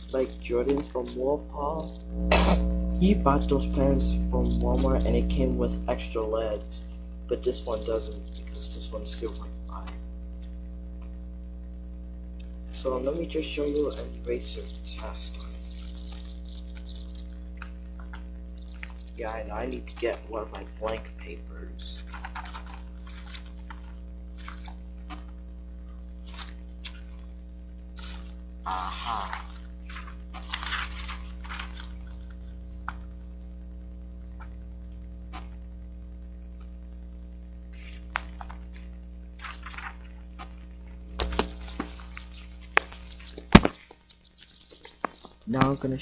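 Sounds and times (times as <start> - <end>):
steady electrical hum: 0.0 - 46.0
paper rustles and taps: 41.2 - 43.9.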